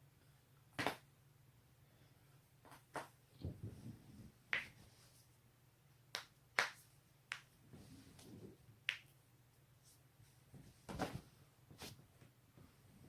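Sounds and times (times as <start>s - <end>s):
soft rustling: 7.6s - 8.7s.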